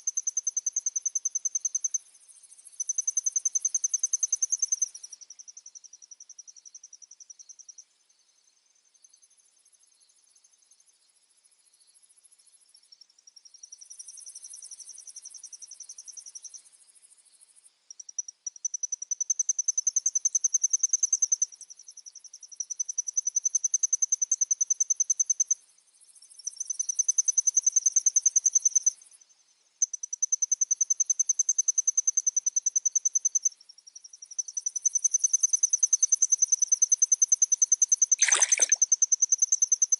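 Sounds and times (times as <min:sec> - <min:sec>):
crickets trilling: 0:38.2 - 0:38.8.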